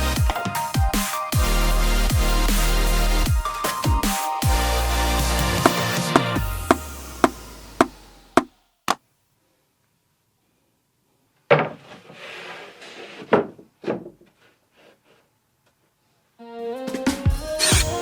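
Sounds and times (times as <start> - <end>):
background music: 0.0 - 8.3, 16.4 - 18.0.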